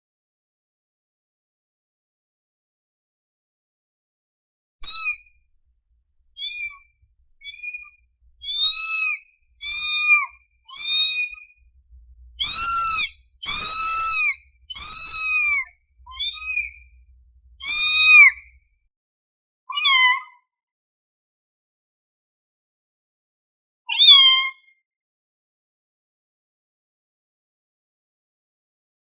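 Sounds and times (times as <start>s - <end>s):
kitten meowing: 4.8s - 5.2s, 6.4s - 6.8s, 7.4s - 11.5s, 12.4s - 17.0s, 17.6s - 18.5s, 19.7s - 20.4s, 23.9s - 24.6s.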